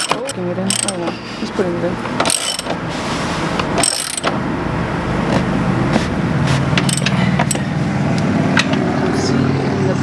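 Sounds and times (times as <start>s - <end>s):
sharp metallic clicks: 0.0s - 1.2s, 2.1s - 2.8s
vehicle engine humming: 0.0s - 10.0s.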